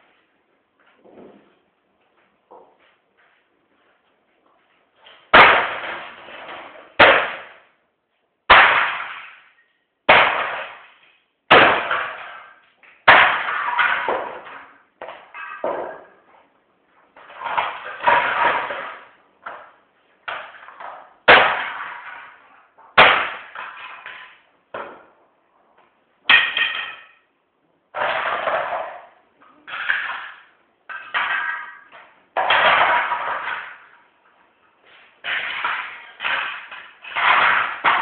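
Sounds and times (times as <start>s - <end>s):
printer being smashed: 8.5s - 9.4s, 21.3s - 22.3s, 35.2s - 38.0s
breaking plastic clatter: 10.1s - 16.0s, 17.2s - 25.0s, 28.0s - 34.0s, 35.2s - 38.0s.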